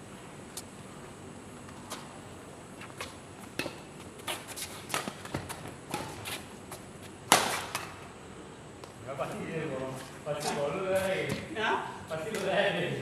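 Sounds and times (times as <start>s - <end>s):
rackets striking shuttlecock: 7.3s - 8.0s.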